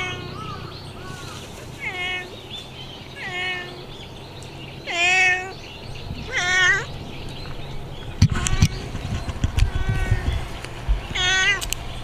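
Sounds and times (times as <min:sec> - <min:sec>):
cat meowing: 0:00.0 - 0:02.3, 0:03.2 - 0:03.7, 0:04.9 - 0:05.5, 0:06.2 - 0:06.9, 0:08.2 - 0:10.5, 0:11.1 - 0:11.7.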